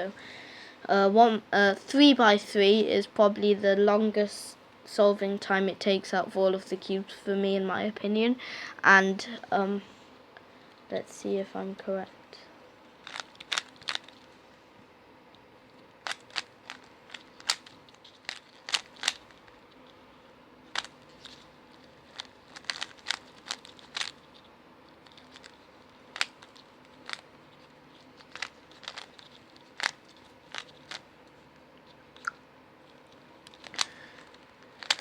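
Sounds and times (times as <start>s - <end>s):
puzzle cube clicking: 13.0s - 14.3s, 15.8s - 19.9s, 20.7s - 24.4s, 25.0s - 31.1s, 32.2s - 35.0s.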